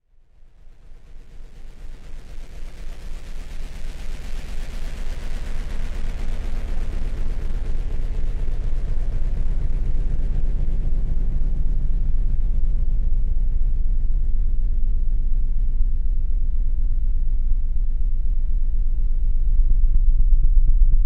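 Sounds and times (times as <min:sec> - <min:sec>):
deep pulsing rumble: 0:06.7 - 0:21.0.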